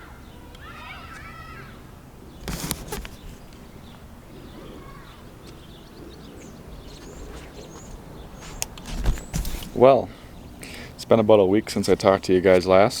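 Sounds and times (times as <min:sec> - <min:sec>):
loud rustle: 0:02.4 - 0:03.6, 0:06.8 - 0:10.1
high bird chirps: 0:03.4 - 0:09.6.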